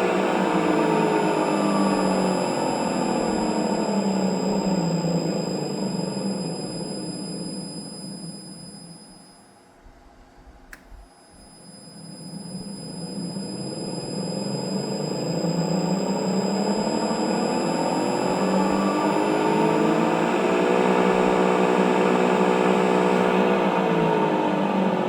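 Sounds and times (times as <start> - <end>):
electric motor running: 0.0 - 9.0, 11.9 - 23.6
single click: 10.7 - 11.0.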